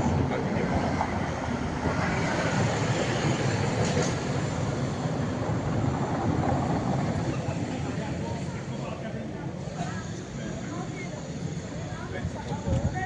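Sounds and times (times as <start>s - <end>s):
tram rolling on rails: 0.0s - 13.0s.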